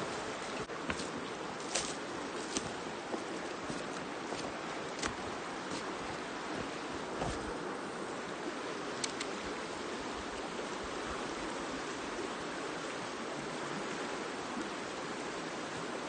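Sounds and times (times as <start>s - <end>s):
river water rushing: 0.0s - 16.0s
faint quick clicks: 9.0s - 9.3s.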